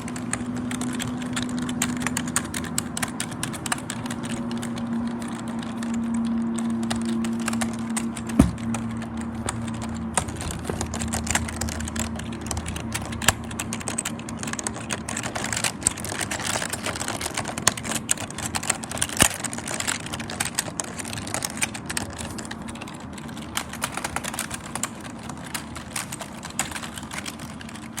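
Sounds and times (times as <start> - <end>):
keyboard typing: 0.0 - 28.0.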